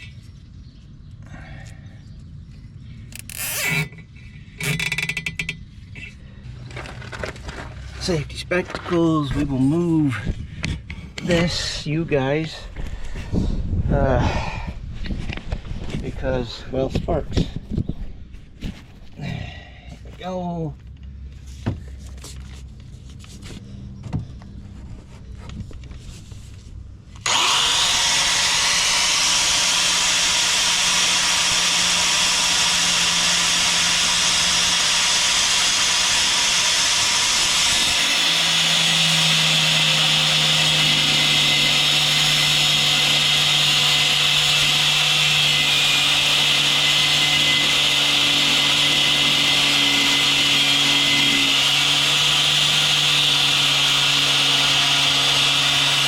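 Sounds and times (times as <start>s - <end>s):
angle grinder cutting metal: 3.2s - 4.0s, 27.2s - 56.0s.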